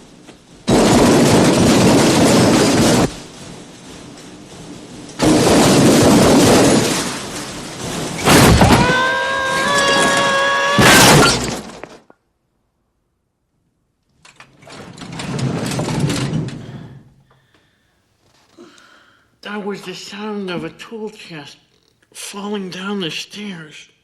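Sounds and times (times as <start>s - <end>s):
metal tool chest crashing down stairs: 0.0s - 12.1s, 14.6s - 17.1s.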